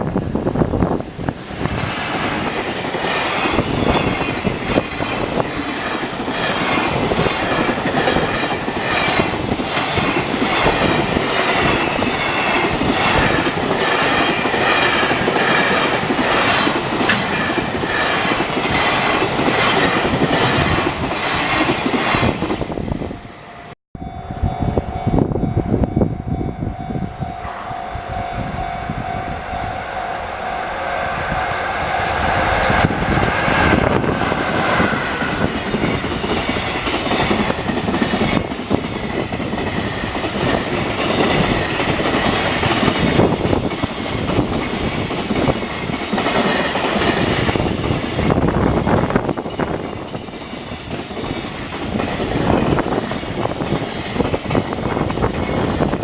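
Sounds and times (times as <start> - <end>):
train wheels clattering over rails: 1.2 - 22.8, 32.2 - 56.0
level crossing warning bell: 24.0 - 32.7.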